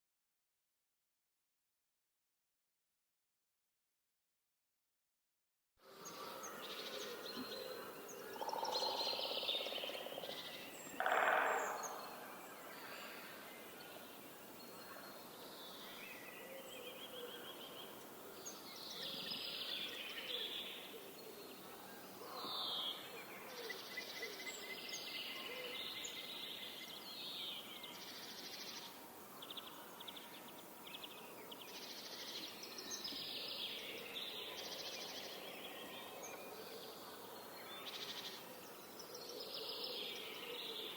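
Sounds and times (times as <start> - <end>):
woodpecker: 6.3 - 12.8.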